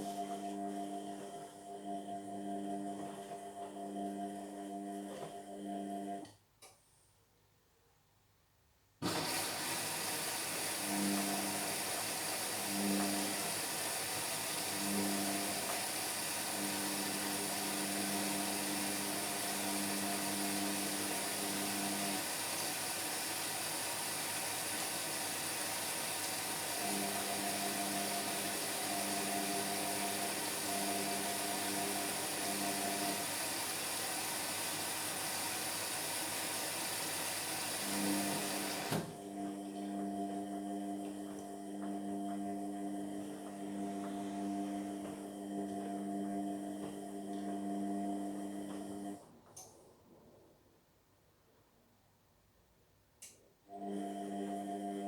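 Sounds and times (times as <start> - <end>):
washing machine motor hum: 0.0 - 6.2, 9.0 - 49.3, 53.7 - 55.0
washing machine hiss: 9.0 - 39.3.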